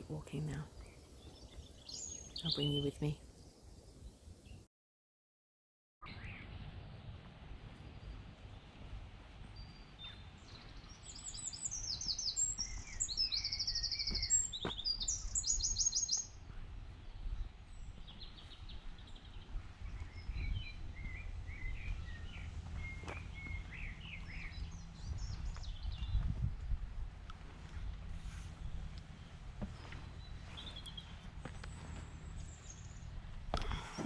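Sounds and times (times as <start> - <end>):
bird singing trilled phrases: 0.0 - 4.6, 9.6 - 16.3
birds chirping: 0.0 - 4.6, 9.5 - 26.3, 27.3 - 34.0
steady low rumble: 16.5 - 33.7.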